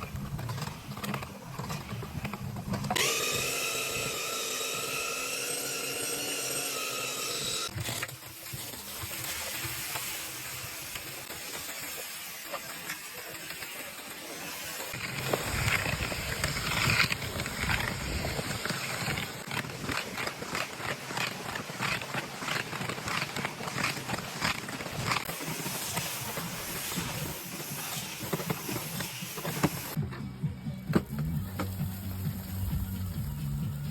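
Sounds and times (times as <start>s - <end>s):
gritty scraping strokes: 11.8s - 30.0s.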